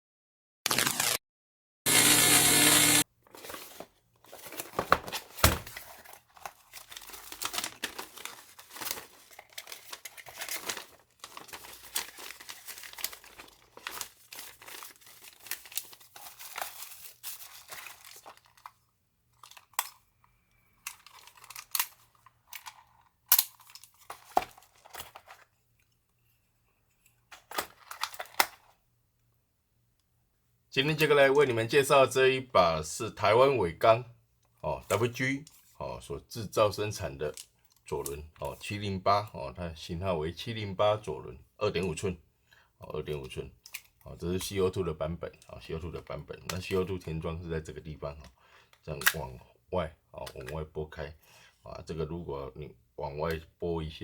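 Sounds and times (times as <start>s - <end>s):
crinkling and rustling handling: 3.1s - 28.8s, 42.8s - 49.4s, 50.2s - 51.0s.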